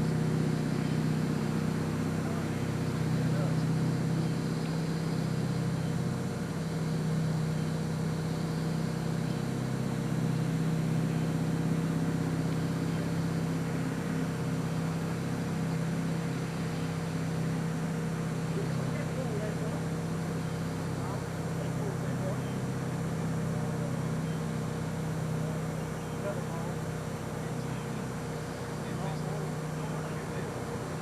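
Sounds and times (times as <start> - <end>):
low mechanical hum: 0.0 - 31.0.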